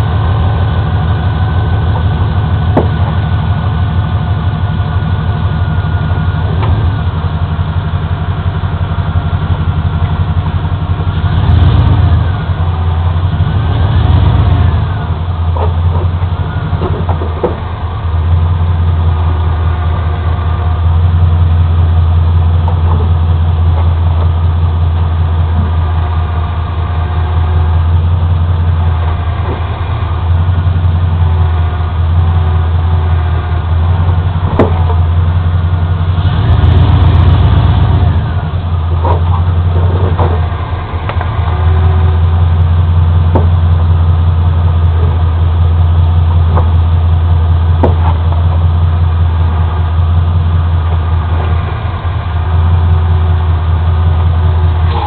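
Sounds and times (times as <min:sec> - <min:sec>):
truck engine running: 0:00.0 - 0:55.0
sharp pops from truck front end: 0:02.7 - 0:03.3, 0:34.5 - 0:35.2, 0:43.2 - 0:43.8, 0:47.7 - 0:48.7.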